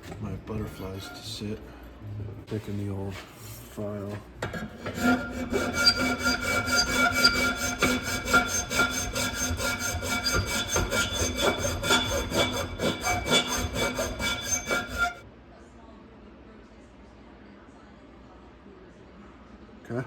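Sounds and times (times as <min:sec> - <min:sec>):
hand file rasping on metal: 0:04.4 - 0:15.2.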